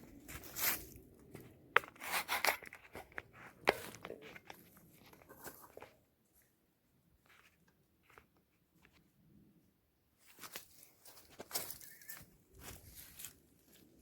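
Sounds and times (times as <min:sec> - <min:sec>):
rustling and crunching in dry brush: 0:00.0 - 0:06.5, 0:10.2 - 0:14.0.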